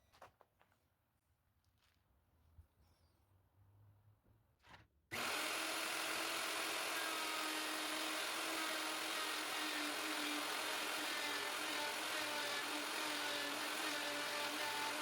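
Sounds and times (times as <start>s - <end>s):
power tool cutting wood: 5.1s - 15.0s.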